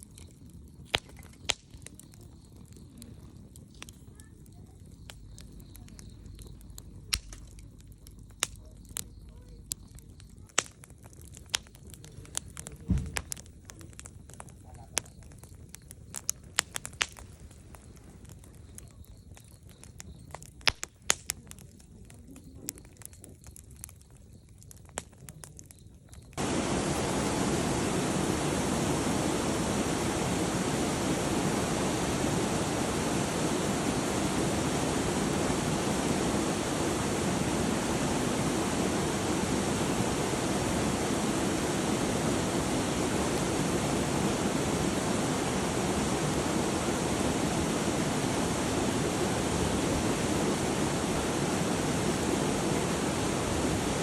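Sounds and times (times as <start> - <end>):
campfire crackling and popping: 0.0 - 54.0
loud steady rushing noise: 26.4 - 54.0.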